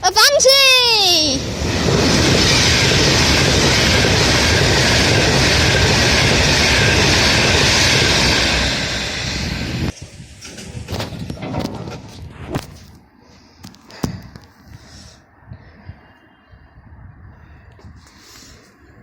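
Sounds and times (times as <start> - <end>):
express train passing: 0.0 - 12.0.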